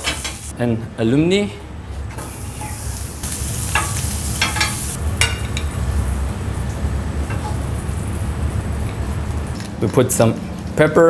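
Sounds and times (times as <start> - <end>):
food sizzling on a grill: 0.0 - 0.5, 2.2 - 9.6.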